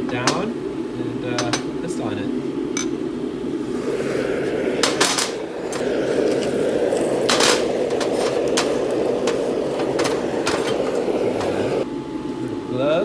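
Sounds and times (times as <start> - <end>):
steady rushing sound: 3.4 - 11.8
metal clanks and scrapes: 4.8 - 11.8.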